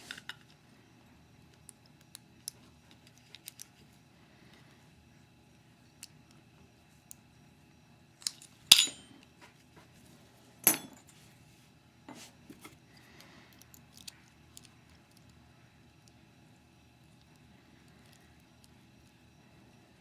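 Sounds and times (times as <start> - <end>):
metal parts clinking: 8.2 - 9.1, 10.6 - 11.0.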